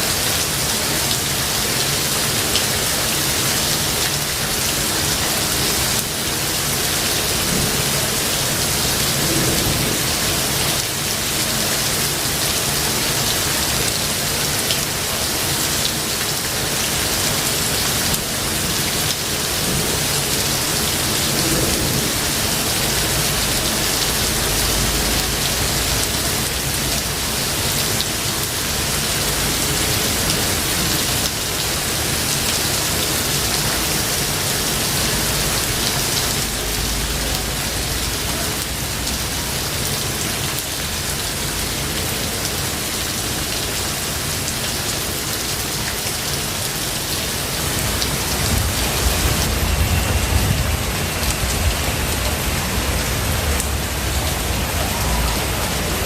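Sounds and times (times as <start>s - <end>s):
heavy rain: 0.0s - 56.0s
low thunder rumbling: 7.3s - 11.4s, 19.4s - 27.9s, 47.8s - 56.0s.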